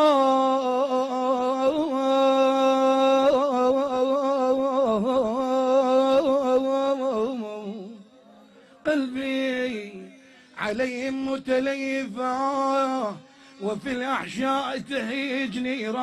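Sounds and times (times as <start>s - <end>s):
man singing a wordless lament: 0.0s - 16.0s.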